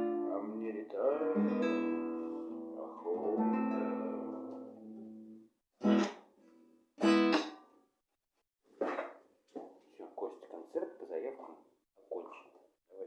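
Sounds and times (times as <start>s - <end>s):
guitar chords strummed: 0.0s - 6.2s.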